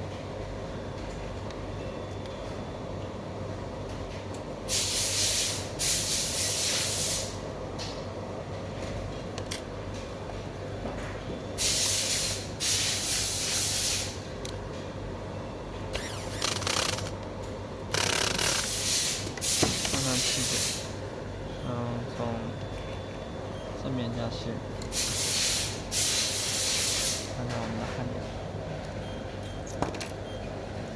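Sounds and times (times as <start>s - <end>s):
air hissing bursts: 4.7s - 7.4s, 11.6s - 14.3s, 16.0s - 17.1s, 18.1s - 21.0s, 24.9s - 27.4s.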